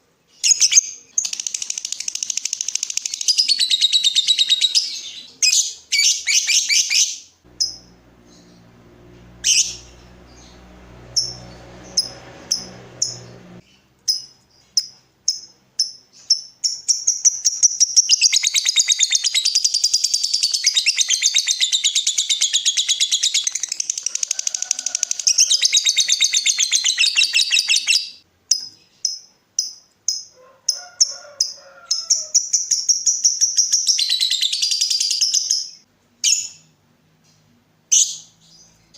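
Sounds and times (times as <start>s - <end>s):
lovebird sharp chirps: 0.4s - 8.6s, 9.4s - 10.6s
lovebird chattering trill: 0.5s - 8.6s, 9.3s - 13.2s.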